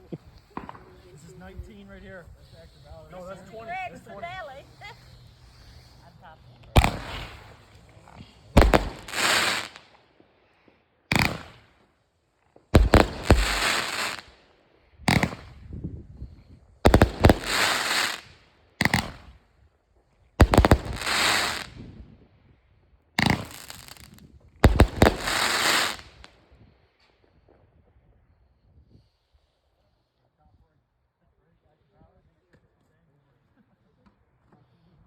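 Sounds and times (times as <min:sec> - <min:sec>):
firework bangs: 0:00.0 - 0:01.7, 0:06.6 - 0:10.0, 0:11.1 - 0:11.9, 0:12.6 - 0:14.3, 0:15.1 - 0:16.0, 0:16.8 - 0:19.4, 0:20.4 - 0:22.0, 0:23.2 - 0:26.3
hissing crackle: 0:00.0 - 0:10.0, 0:12.6 - 0:14.4, 0:16.8 - 0:19.3, 0:20.4 - 0:21.8, 0:23.2 - 0:26.3.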